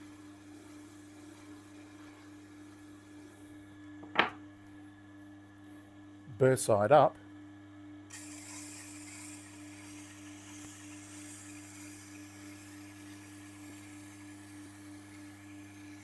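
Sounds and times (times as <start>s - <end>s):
knife blade hissing on wheel: 8.1s - 16.0s
sharpening wheel motor hum: 8.1s - 16.0s.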